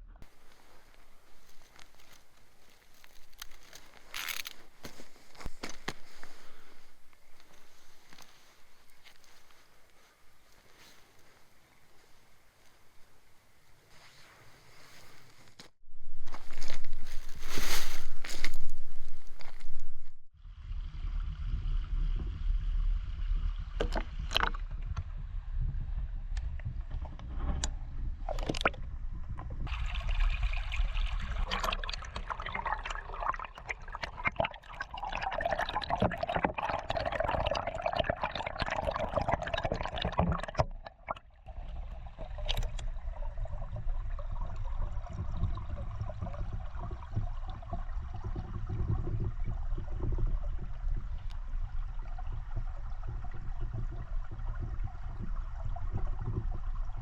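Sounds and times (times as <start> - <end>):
stream water trickling: 0.2 - 14.0, 14.8 - 19.9, 29.6 - 57.0
low rumble: 15.9 - 30.0, 41.5 - 57.0.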